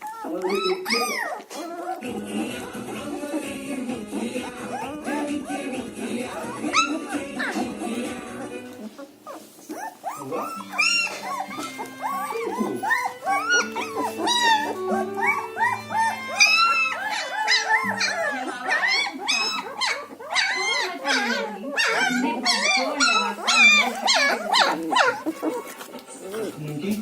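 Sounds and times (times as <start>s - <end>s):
puppies whining and yelping: 0.0s - 27.0s
music with held low notes: 10.1s - 19.9s.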